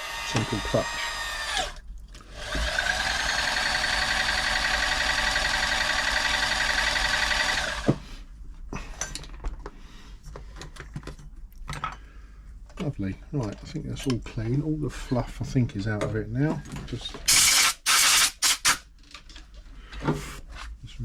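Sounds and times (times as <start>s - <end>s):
sewing machine motor running: 0.0s - 7.9s.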